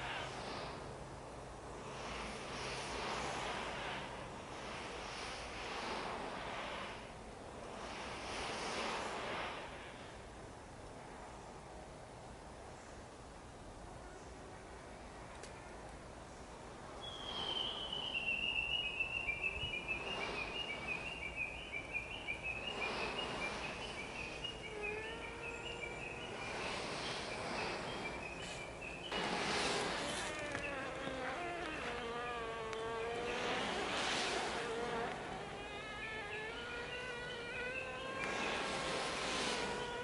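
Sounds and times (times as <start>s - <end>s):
bees buzzing: 17.0s - 40.0s
high thin pulsed bee piping: 17.0s - 40.0s
lower bee tooting: 17.0s - 40.0s.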